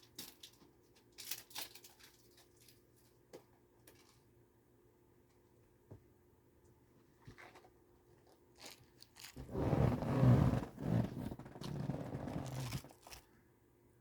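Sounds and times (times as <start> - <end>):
chewing and crunching: 7.3 - 9.4, 11.5 - 13.3.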